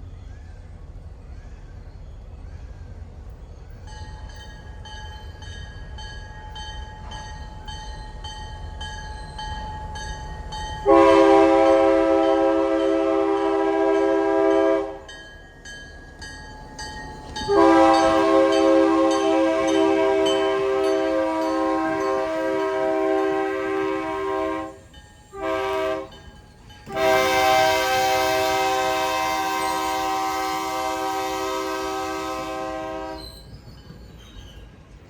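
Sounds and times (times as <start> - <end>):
locomotive air horn blasts: 10.8 - 15.1, 17.4 - 26.2, 26.9 - 33.3.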